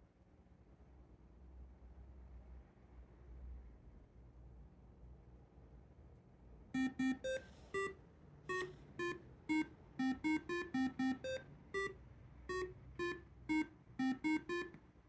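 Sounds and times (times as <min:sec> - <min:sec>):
alarm clock beeping a tune: 0:06.8 - 0:07.9, 0:08.5 - 0:14.8.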